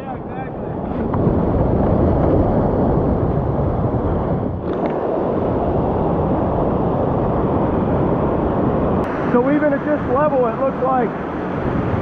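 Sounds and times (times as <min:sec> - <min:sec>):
creek rapids rushing: 0:09.0 - 0:12.0.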